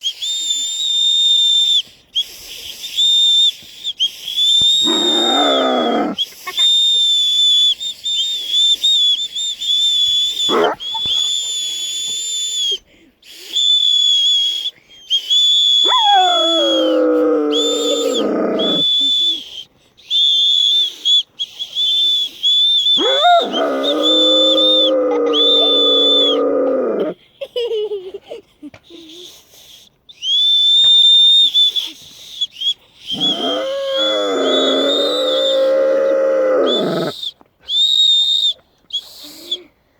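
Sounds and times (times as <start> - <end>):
high whistle blasts: 0.0 - 5.6, 6.5 - 17.0, 17.6 - 26.4, 30.1 - 35.8, 36.7 - 39.6
dog howling along: 4.8 - 6.2, 10.5 - 11.3, 15.8 - 18.9, 23.0 - 27.1, 33.1 - 37.1.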